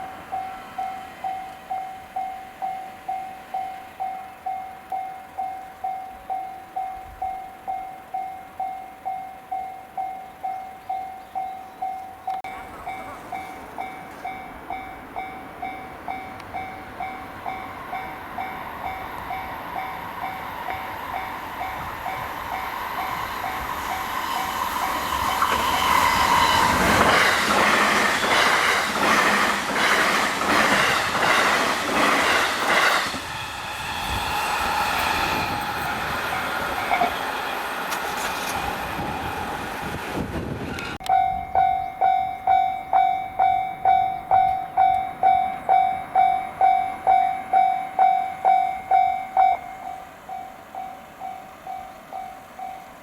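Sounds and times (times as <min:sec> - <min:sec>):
level-crossing warning bell ringing: 0:00.0 - 0:33.1, 0:41.0 - 0:53.0
train wheels clattering over rail joints: 0:12.4 - 0:17.2, 0:23.1 - 0:33.3.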